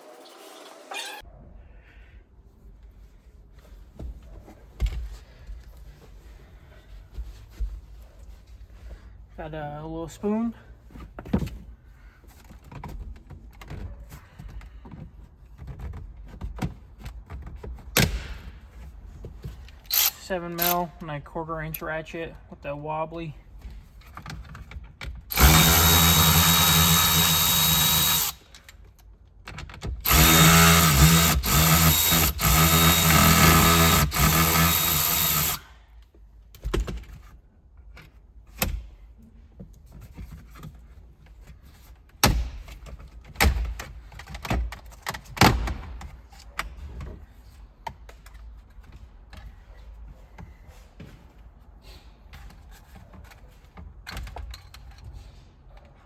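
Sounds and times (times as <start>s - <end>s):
power tool spinning socket: 19.8s - 20.9s, 25.3s - 28.7s, 30.0s - 35.7s.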